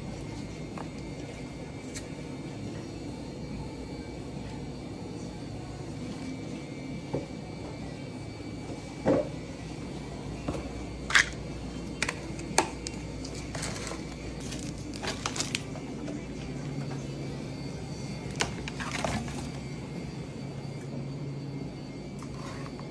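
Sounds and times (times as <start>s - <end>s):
steady low hum: 0.0s - 22.9s
food crunching and crinkling: 12.0s - 15.8s.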